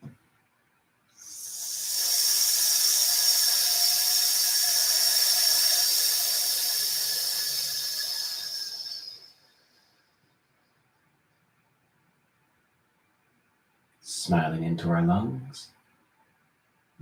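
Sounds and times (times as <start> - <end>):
person hissing through teeth: 1.1 - 10.0.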